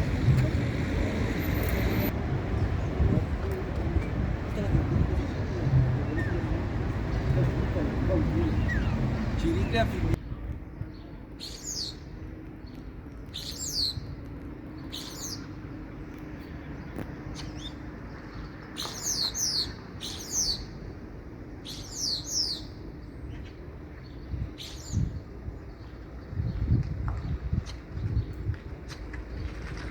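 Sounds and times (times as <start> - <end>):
starling whistling calls: 8.5 - 9.0.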